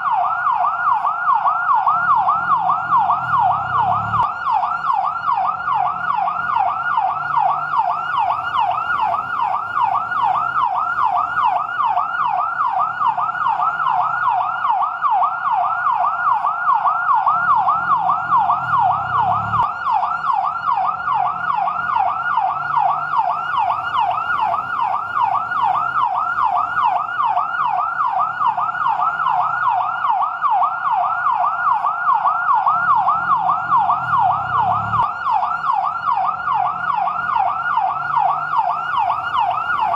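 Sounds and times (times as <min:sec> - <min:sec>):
fire truck siren yelping: 0:00.0 - 0:39.9.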